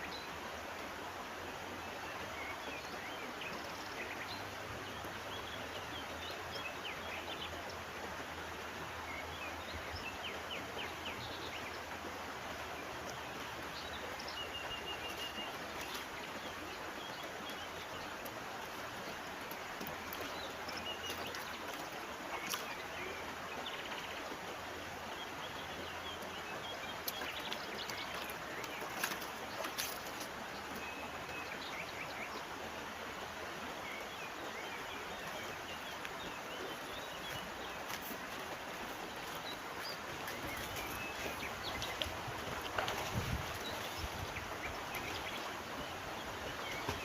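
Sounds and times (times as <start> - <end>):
stream running: 0.0 - 47.0
birds chirping: 12.7 - 47.0.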